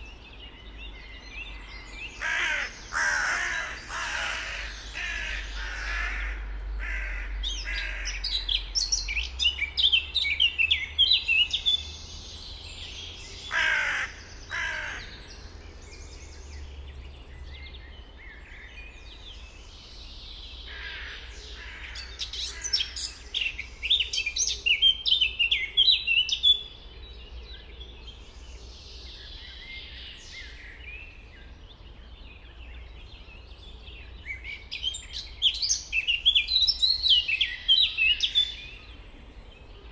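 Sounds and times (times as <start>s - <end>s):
songbirds chirping: 0.0s - 39.9s
crow cawing: 2.2s - 8.3s, 13.5s - 15.2s, 20.7s - 23.0s.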